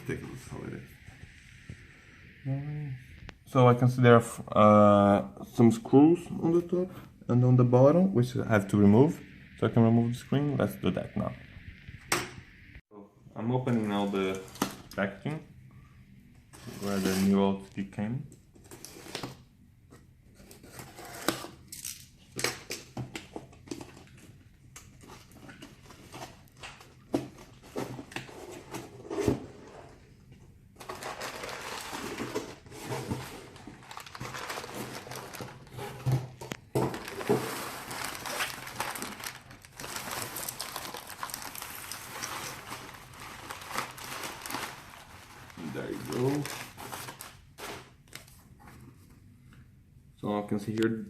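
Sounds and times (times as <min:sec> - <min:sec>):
wrapping crinkling: 0:30.8 - 0:48.4.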